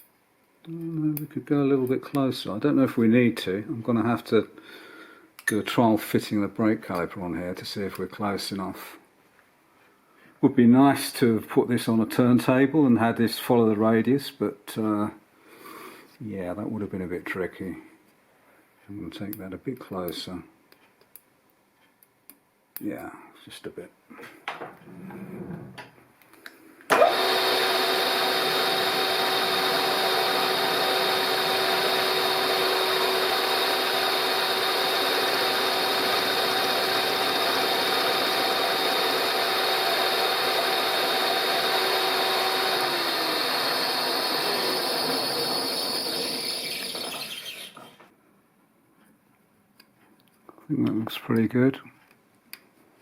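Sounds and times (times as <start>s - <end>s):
milling machine whine: 26.9s - 48.1s.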